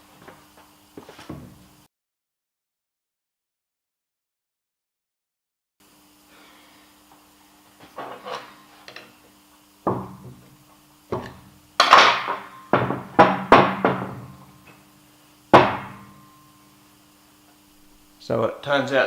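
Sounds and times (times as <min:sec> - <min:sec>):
faint steady hum: 0:05.8 - 0:19.0.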